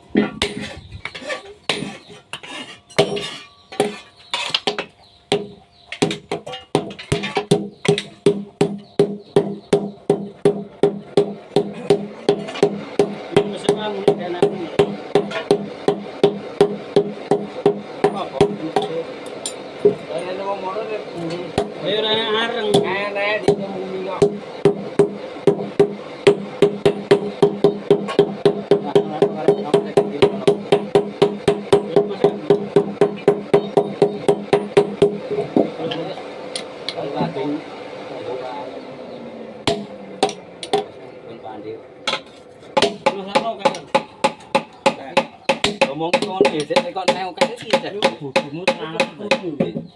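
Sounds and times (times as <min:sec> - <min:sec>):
hand tool strokes with ringing: 0:00.4 - 0:04.9.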